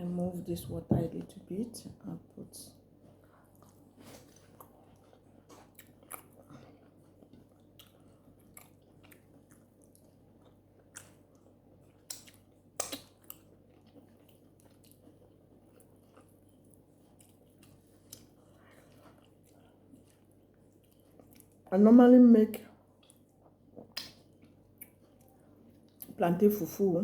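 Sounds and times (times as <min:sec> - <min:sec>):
person chewing food: 0:02.9 - 0:21.7, 0:22.8 - 0:26.1
wet mouth clicks and smacks: 0:12.1 - 0:13.4, 0:23.8 - 0:25.0.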